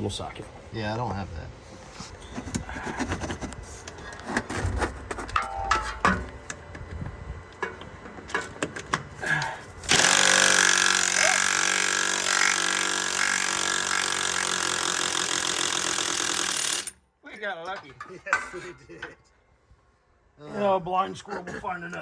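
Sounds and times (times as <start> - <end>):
metal tools clinking: 5.3 - 6.2, 17.7 - 19.2
impact wrench running: 9.8 - 17.0.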